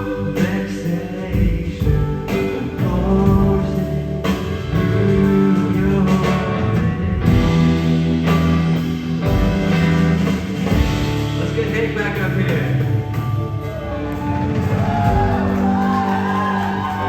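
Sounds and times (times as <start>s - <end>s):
person singing: 0.0s - 7.4s
drum kit playing: 0.0s - 17.0s
electric guitar: 0.0s - 17.0s
loud band music: 0.0s - 17.0s.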